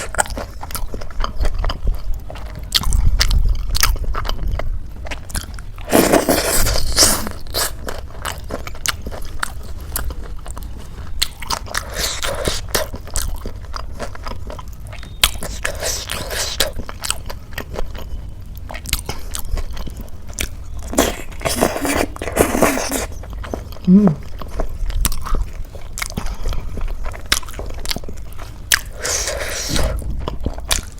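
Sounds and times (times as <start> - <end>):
chewing and crunching: 0.0 - 30.9
wet mouth clicks: 15.2 - 16.8, 28.7 - 30.0.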